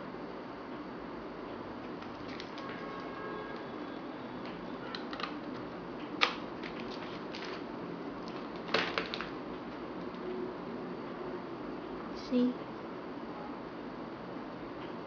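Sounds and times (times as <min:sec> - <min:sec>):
charging cable plastic clicks: 0:04.4 - 0:07.6.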